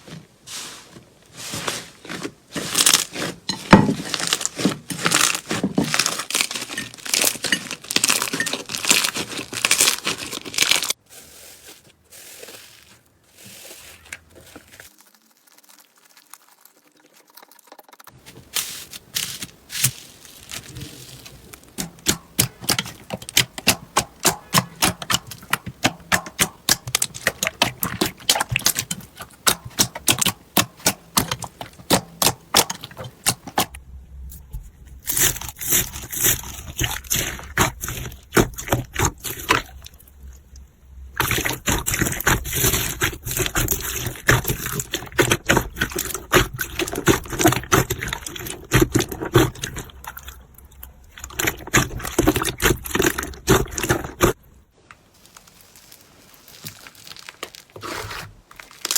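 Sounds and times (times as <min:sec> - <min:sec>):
low hum: 0:33.8 - 0:35.5.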